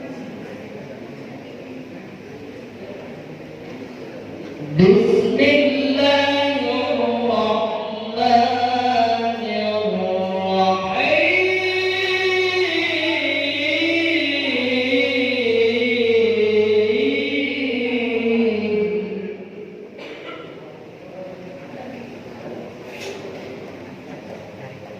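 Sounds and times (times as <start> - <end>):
man reciting melodically: 4.6 - 20.0.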